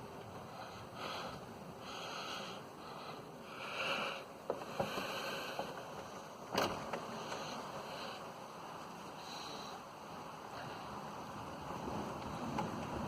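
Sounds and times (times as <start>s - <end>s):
rain falling: 3.4s - 13.0s.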